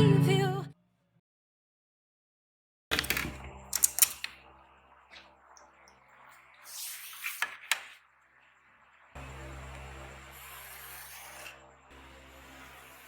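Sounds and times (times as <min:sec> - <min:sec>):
small objects clicking on desk: 0:02.9 - 0:04.3.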